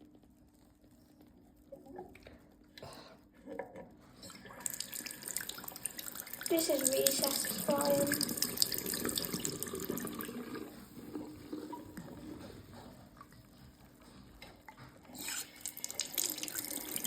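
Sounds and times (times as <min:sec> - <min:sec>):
water running in a sink: 0:03.4 - 0:17.0.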